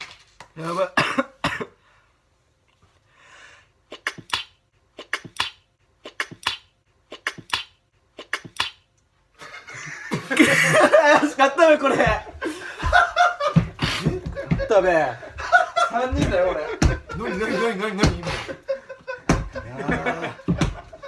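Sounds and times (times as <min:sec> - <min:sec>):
person sneezing: 0:03.9 - 0:08.8
loud laughter: 0:09.4 - 0:21.0.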